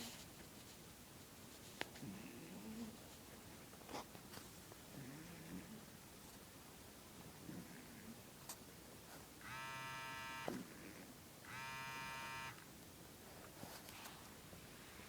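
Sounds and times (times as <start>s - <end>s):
steady buzzes: 9.4s - 10.6s, 11.4s - 12.6s.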